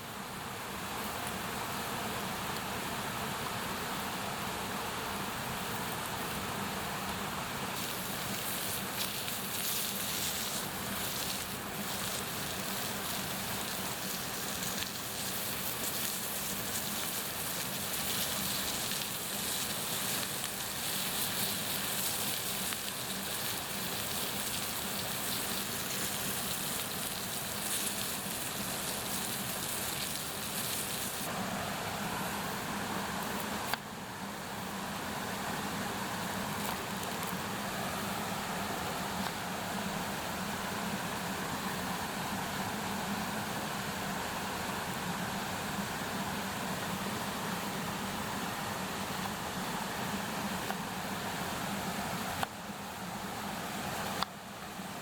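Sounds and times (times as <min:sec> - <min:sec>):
campfire crackles and pops: 0:07.1 - 0:31.3
sausages sizzling: 0:07.7 - 0:31.3.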